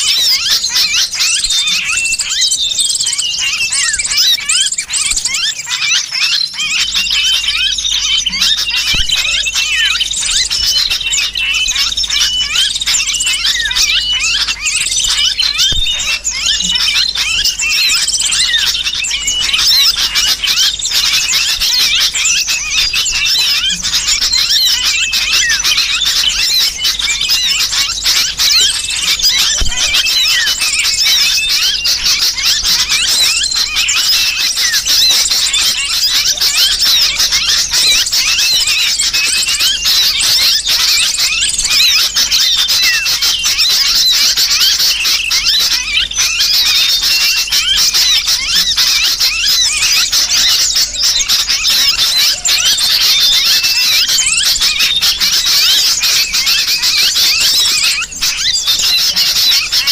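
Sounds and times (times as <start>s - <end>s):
bird distress squeals: 0.0s - 59.9s
small birds chirping: 0.0s - 59.9s.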